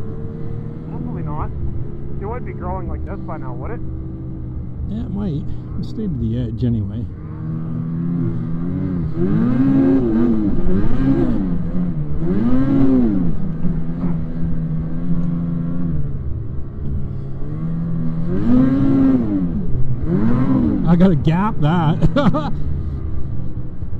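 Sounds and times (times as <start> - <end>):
snowmobile engine revving: 2.2 - 3.8.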